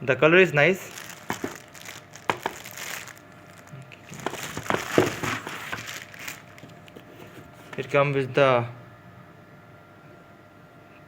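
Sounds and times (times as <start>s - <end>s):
rustling: 0.8s - 7.8s.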